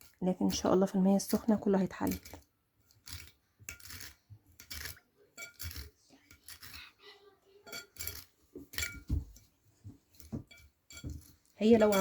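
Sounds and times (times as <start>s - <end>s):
comb scraping through wet hair: 0.0s - 7.1s.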